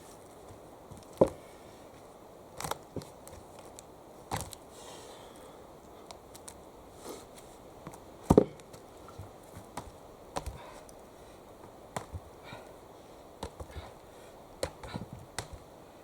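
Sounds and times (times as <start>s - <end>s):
axe chopping wood: 8.2s - 8.8s, 9.6s - 10.6s, 11.9s - 12.2s, 13.4s - 13.8s, 14.6s - 15.6s.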